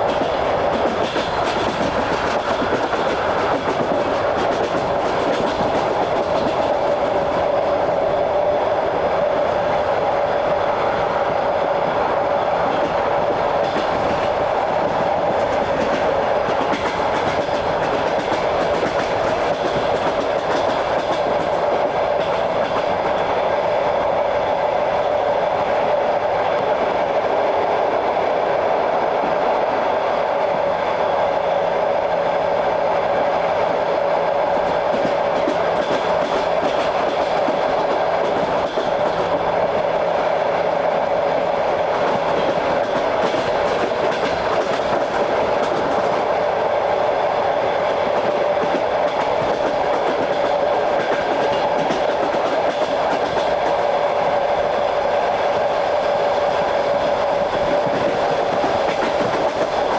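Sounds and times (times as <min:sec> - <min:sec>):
train wheels clattering: 0:00.0 - 0:07.9, 0:10.9 - 0:23.4, 0:32.2 - 0:59.9
train running rumble: 0:00.0 - 0:27.6, 0:29.2 - 0:59.9.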